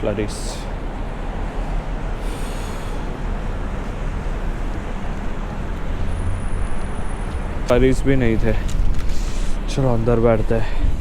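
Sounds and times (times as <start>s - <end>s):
wind buffeting microphone: 3.2s - 11.0s.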